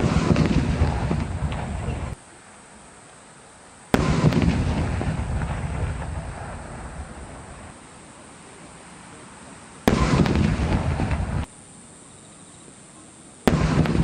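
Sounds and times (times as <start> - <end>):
firework bangs: 0.0 - 2.2, 3.9 - 7.8, 9.8 - 11.5, 13.4 - 14.0
firework rumbling and crackling: 0.0 - 2.9, 3.9 - 11.5, 13.4 - 14.0.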